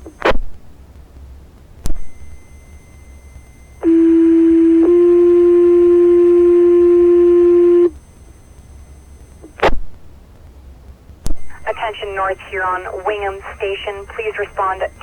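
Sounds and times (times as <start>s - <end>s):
radio squelch burst: 11.3s - 15.0s
two-tone pager alert: 12.7s - 15.0s.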